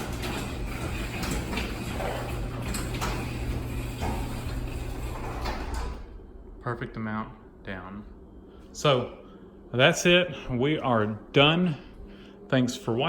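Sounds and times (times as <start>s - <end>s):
door rolling down track: 0.0s - 6.2s
garage door motor hum: 0.0s - 10.1s.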